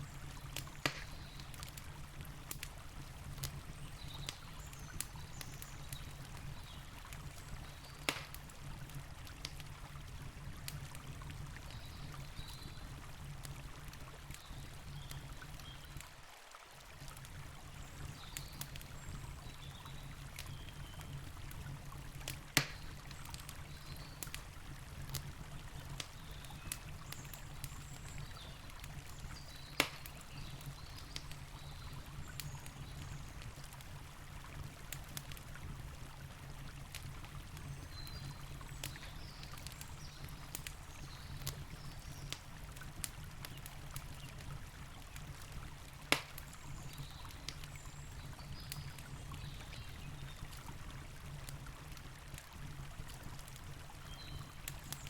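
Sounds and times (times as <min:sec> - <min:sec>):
campfire crackling and popping: 0:00.0 - 0:55.0.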